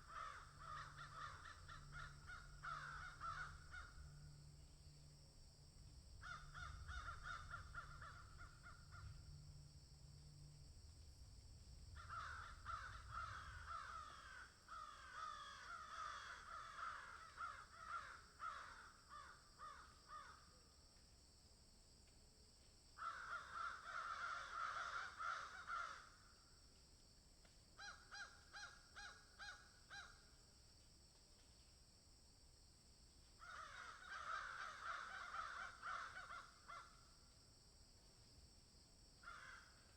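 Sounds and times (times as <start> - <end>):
crows cawing: 0.0 - 4.6, 6.2 - 9.4, 12.0 - 20.4, 23.0 - 26.3, 27.8 - 30.3, 33.4 - 37.0, 39.2 - 39.9.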